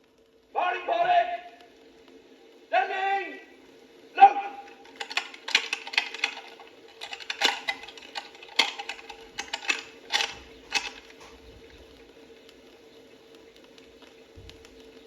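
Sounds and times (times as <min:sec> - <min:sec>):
small hard objects clicking: 0:04.7 - 0:11.3.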